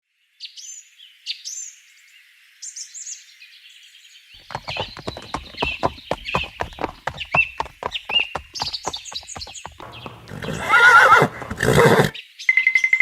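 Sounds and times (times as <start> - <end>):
small birds chirping: 4.4 - 12.1.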